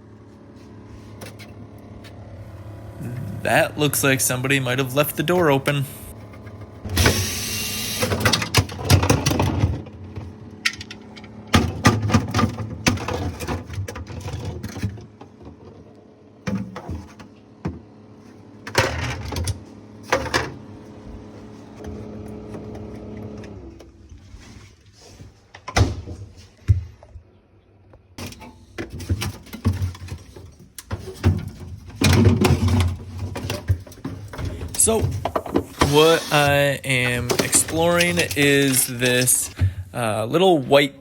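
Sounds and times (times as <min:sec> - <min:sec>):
low hum: 0:00.0 - 0:13.1
knocks and plastic clatter: 0:08.0 - 0:17.9, 0:28.2 - 0:40.0.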